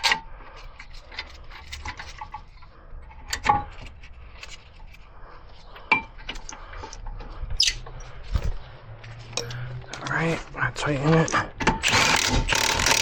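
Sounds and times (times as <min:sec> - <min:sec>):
metal tools clinking: 0:09.3 - 0:10.3.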